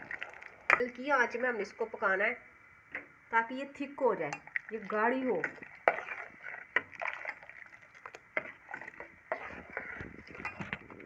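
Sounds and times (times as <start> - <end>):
light scraping: 8.4 - 11.0.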